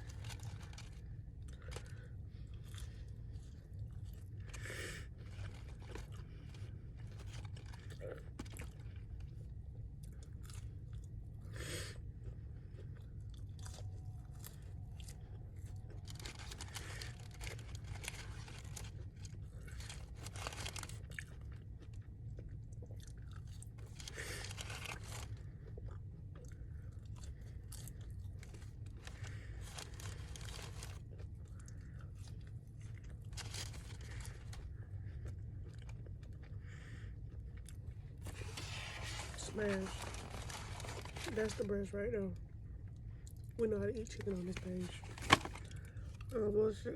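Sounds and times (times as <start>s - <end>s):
chewing and crunching fried chicken: 0.0s - 46.9s
low hum: 0.0s - 46.9s.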